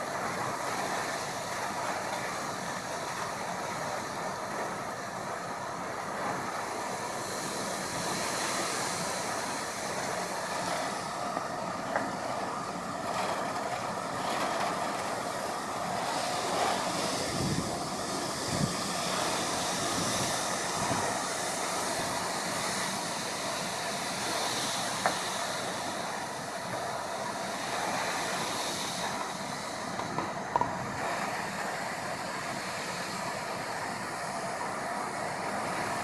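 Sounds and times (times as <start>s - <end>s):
wind rushing through leaves: 0.0s - 36.0s
wind buffeting microphone: 14.6s - 22.4s.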